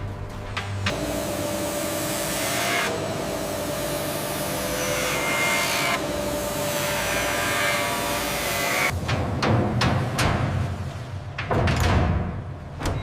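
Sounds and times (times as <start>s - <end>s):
machine hiss and hum: 0.0s - 8.9s.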